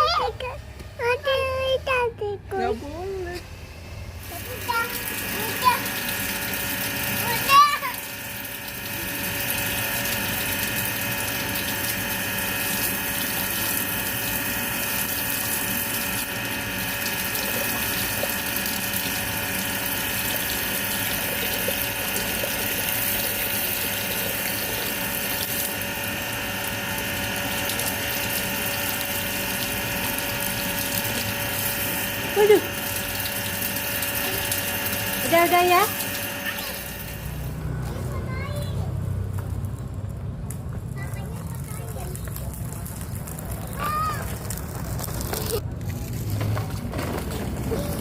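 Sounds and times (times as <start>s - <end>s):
machine motor humming: 0.0s - 38.1s.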